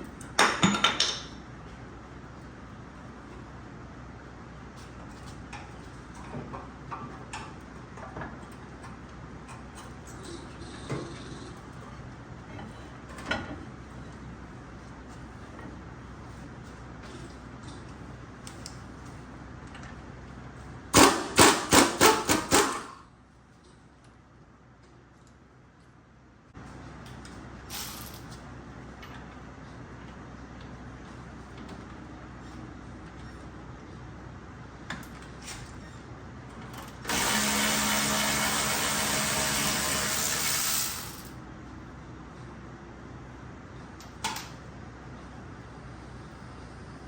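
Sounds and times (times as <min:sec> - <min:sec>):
power tool running: 0:37.0 - 0:41.3.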